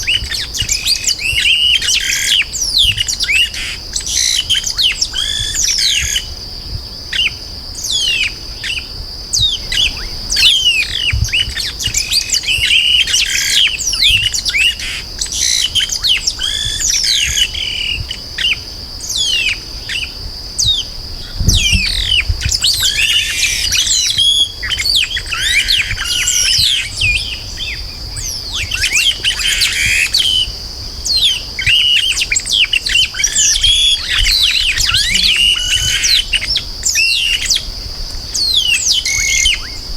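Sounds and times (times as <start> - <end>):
birds singing in chorus: 0.0 - 39.9.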